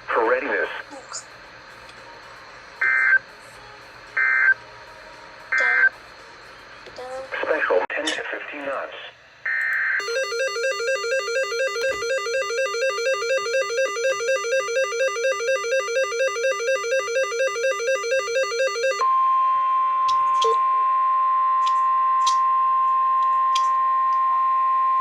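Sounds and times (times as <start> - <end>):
repeating electronic note pattern: 10.0 - 19.0
steady single-pitch alert tone: 10.0 - 19.0.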